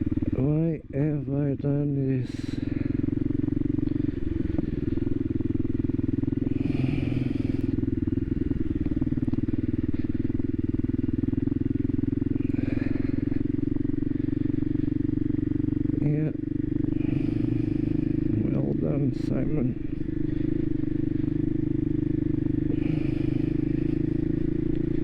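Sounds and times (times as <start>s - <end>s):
motorcycle engine running: 0.0s - 25.0s.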